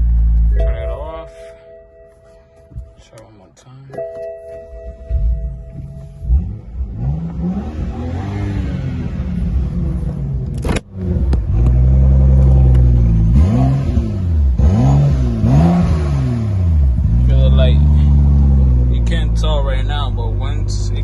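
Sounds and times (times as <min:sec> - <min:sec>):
car engine revving: 0:04.5 - 0:21.0.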